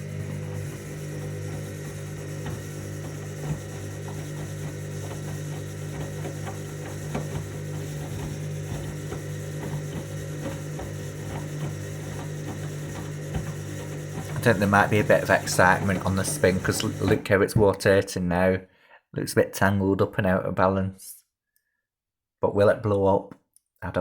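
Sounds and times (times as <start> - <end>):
clicks and knocks of tumbling load: 0.0 - 17.7
washing machine motor hum: 0.0 - 17.9.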